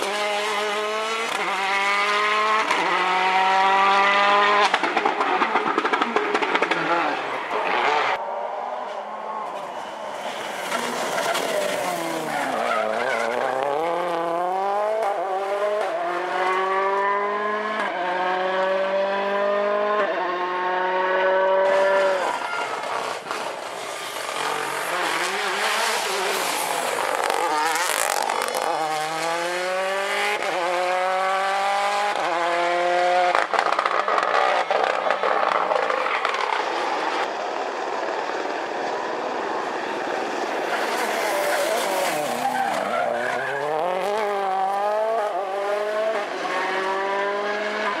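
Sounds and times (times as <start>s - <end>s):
rally car engine accelerating: 0.0s - 8.2s, 10.2s - 48.0s
tyres squealing: 40.8s - 44.0s.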